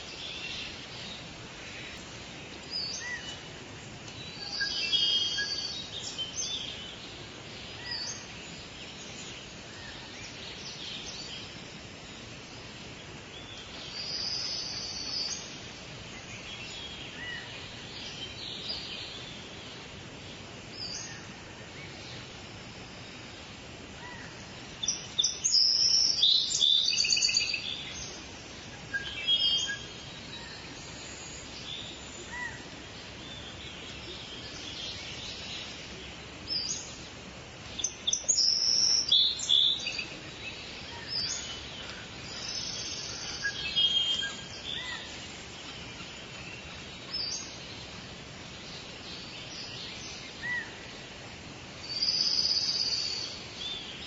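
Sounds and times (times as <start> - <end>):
birds singing and chirping: 0.0 - 54.0
steady background hiss: 0.0 - 54.0.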